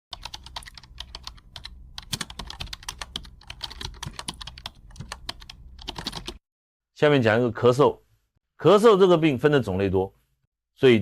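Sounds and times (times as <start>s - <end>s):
keyboard typing clicks: 0.1s - 6.4s
low steady hum: 0.4s - 6.3s.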